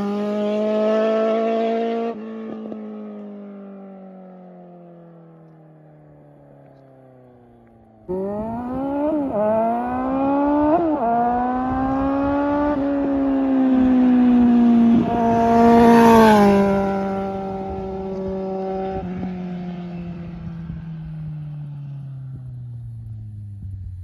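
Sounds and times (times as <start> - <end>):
motorcycle engine revving: 8.1 - 24.0.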